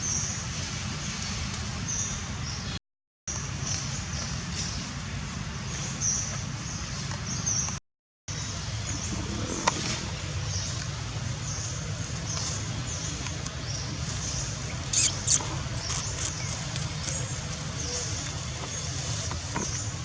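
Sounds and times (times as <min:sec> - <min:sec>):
short high chirping calls: 0:14.6 - 0:17.3.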